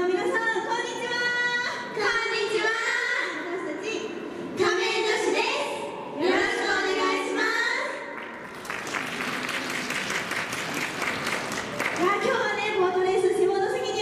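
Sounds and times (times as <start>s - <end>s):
audience applause: 8.4s - 12.3s.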